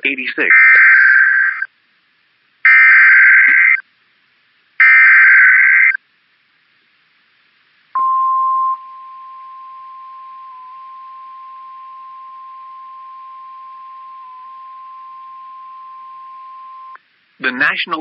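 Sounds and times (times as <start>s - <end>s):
steady warning alarm tone: 8.0s - 17.0s.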